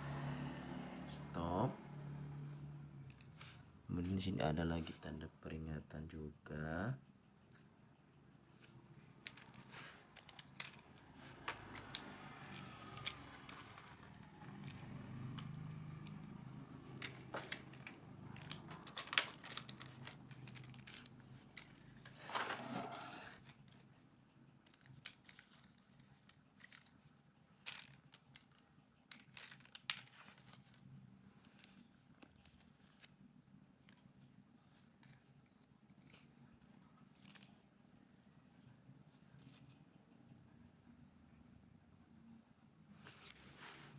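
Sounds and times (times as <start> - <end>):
plastic toy pieces clicking: 9.2 - 10.8, 11.4 - 22.0, 24.6 - 30.8.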